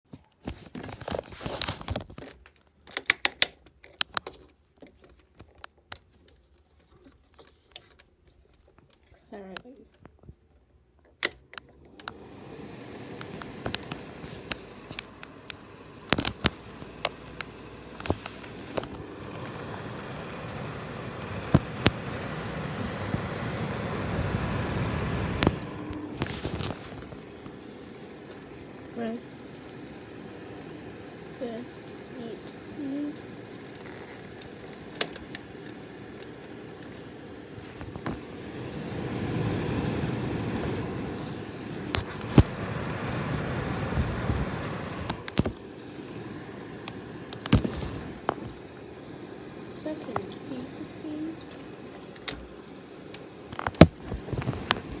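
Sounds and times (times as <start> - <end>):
fan airflow rushing: 11.2 - 55.0.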